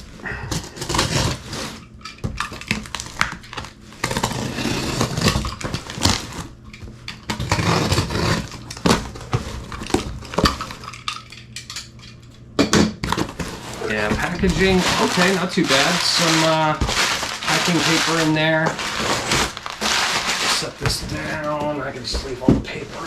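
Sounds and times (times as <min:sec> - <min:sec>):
cardboard scraping and rustling: 0:00.5 - 0:01.8, 0:02.6 - 0:06.5, 0:07.3 - 0:10.4, 0:13.1 - 0:23.0.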